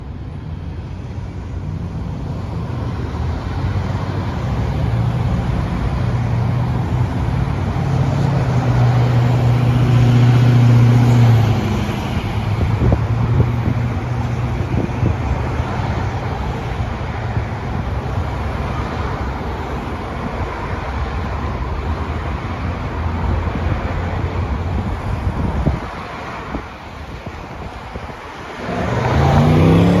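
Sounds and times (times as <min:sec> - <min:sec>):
cars passing: 0:00.0 - 0:30.0
vehicle pulling away: 0:28.6 - 0:30.0.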